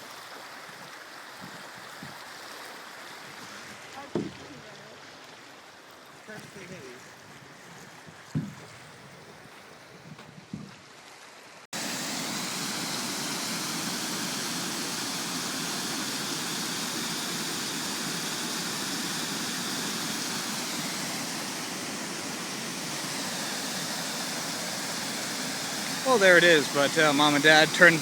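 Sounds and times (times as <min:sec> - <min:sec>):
soft knocks: 0:04.1 - 0:04.5, 0:08.3 - 0:08.9
waterfall rushing: 0:11.8 - 0:28.0.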